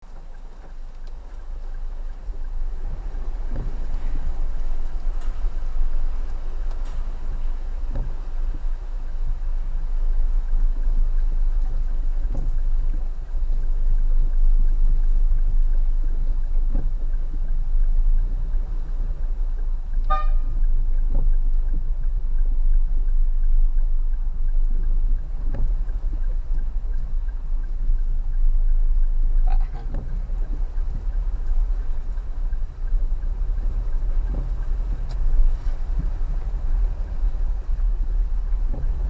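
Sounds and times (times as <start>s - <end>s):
car rumbling on the move: 0.0s - 39.0s
short car horn toot: 20.1s - 20.6s.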